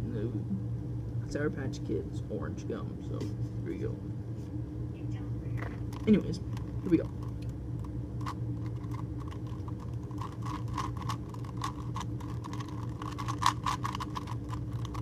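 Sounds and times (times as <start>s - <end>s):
steady low hum: 0.0s - 15.0s
puzzle cube clicking: 8.2s - 15.0s.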